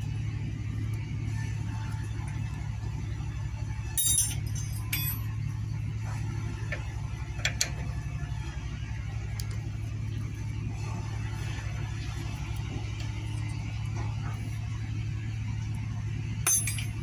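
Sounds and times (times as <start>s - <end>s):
steady low hum: 0.0s - 17.0s
metal tools clinking and clattering: 4.0s - 5.4s, 16.4s - 17.0s.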